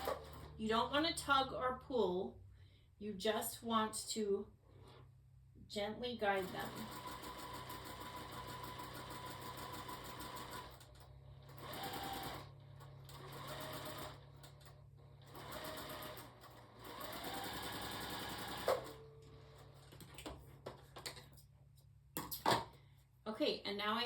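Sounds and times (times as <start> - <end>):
sewing machine stitching: 0.0 - 0.6, 6.3 - 19.9.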